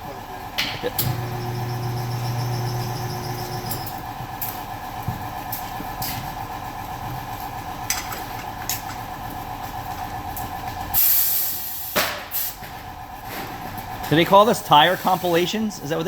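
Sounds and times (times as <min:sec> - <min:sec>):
machine motor whining: 0:01.0 - 0:04.0.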